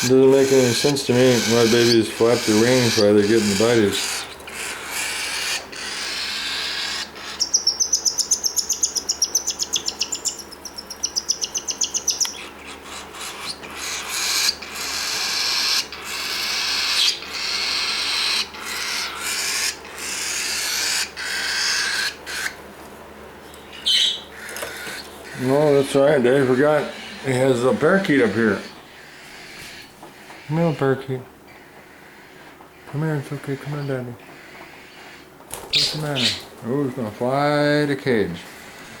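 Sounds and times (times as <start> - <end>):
baby bird chirping: 0.0 - 22.6, 23.5 - 36.6
raspy hissing begging calls: 0.0 - 22.6, 23.7 - 39.0
wings fluttering: 35.4 - 37.8.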